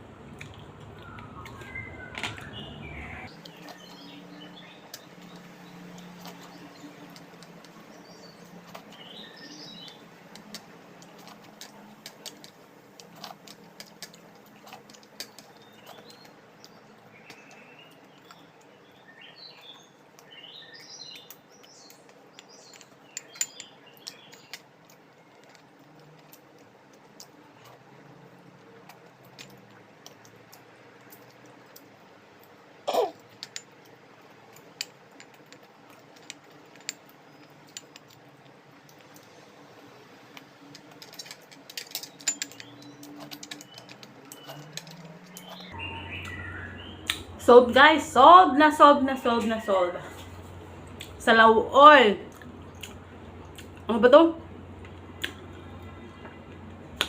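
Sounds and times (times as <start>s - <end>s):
chewing and smacking: 3.3s - 18.8s, 21.3s - 46.4s, 52.3s - 53.9s, 54.5s - 57.0s.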